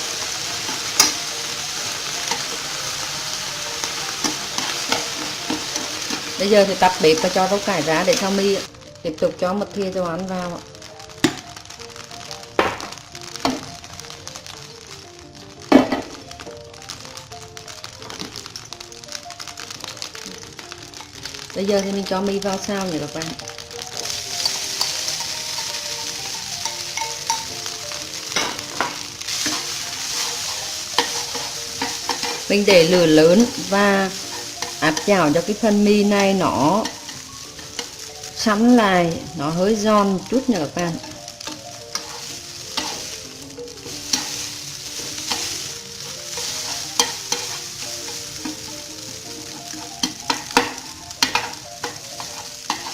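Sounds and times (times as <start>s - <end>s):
noodles sizzling in a frying pan: 0.0s - 52.9s.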